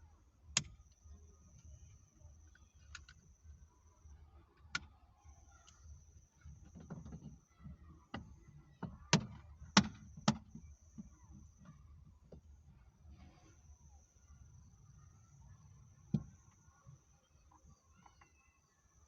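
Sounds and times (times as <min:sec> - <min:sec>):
faint high-pitched whine: 0:00.0 - 0:19.0.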